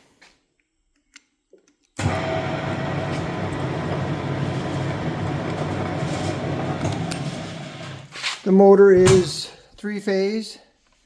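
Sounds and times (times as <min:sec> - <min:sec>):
metal lathe running: 0:02.0 - 0:08.1.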